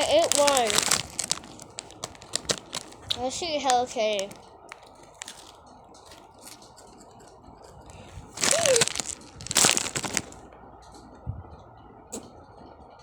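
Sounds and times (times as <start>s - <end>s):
plastic wrapper crinkling: 0.0s - 6.7s, 7.8s - 10.4s.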